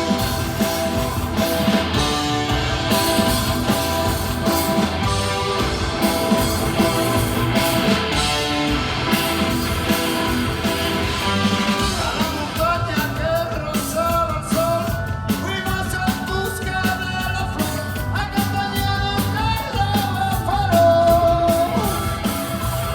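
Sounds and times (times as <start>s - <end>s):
live rock band playing: 0.0s - 22.9s
person singing: 11.2s - 22.5s.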